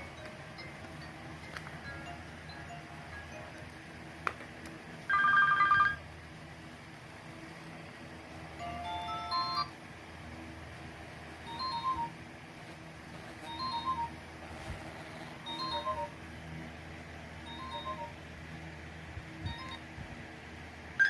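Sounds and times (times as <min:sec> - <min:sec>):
mobile phone ringtone: 0:00.0 - 0:03.6, 0:05.1 - 0:06.0, 0:08.6 - 0:09.7, 0:11.4 - 0:12.2, 0:13.4 - 0:14.2, 0:15.0 - 0:16.2, 0:17.4 - 0:18.2, 0:19.5 - 0:19.8.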